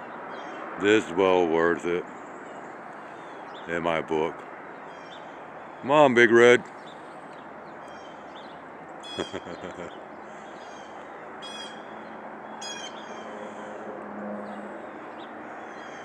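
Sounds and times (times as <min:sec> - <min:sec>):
outdoor background hiss: 0:00.0 - 0:13.6
bird giving harsh calls: 0:09.0 - 0:09.7, 0:10.6 - 0:11.9, 0:12.6 - 0:13.7.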